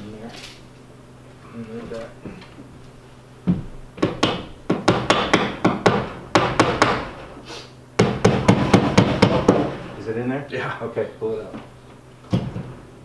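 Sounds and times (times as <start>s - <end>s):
hammer tapping a nail: 4.0s - 7.3s, 8.0s - 9.8s.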